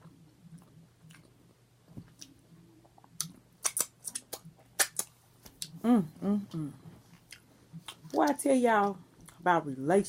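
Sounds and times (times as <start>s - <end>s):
quiet chewing: 0.0s - 5.8s, 6.5s - 9.4s
low steady hum: 0.0s - 10.0s
wet smacking mouth clicks: 2.0s - 5.8s.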